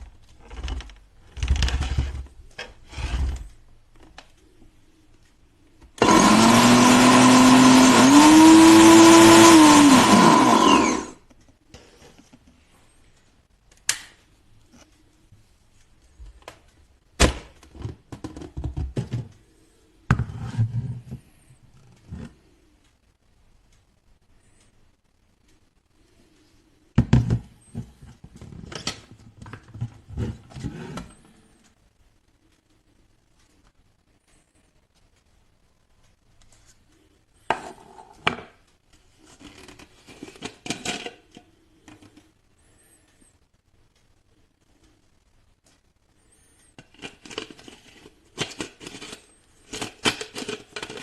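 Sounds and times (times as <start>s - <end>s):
plastic clicks and clatter: 46.8s - 51.0s.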